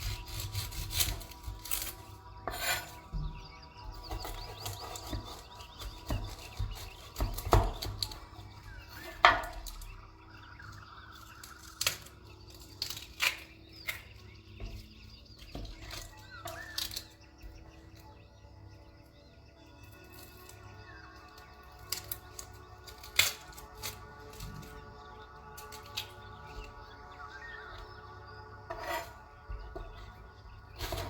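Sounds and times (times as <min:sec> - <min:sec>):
utensils and dishes on wooden board: 0:00.0 - 0:10.0, 0:11.1 - 0:17.8, 0:28.7 - 0:31.0.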